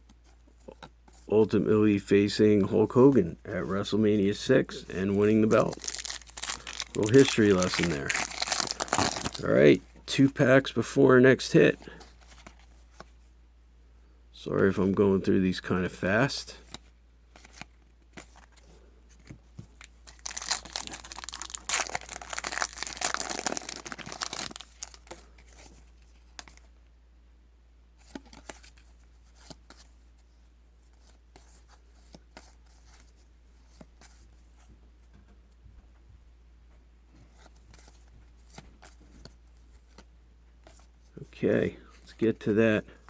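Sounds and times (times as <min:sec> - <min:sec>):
cards clicking and rustling: 0:05.2 - 0:09.6, 0:16.7 - 0:25.7
wrapper tearing and crinkling: 0:05.4 - 0:09.6, 0:19.8 - 0:25.2.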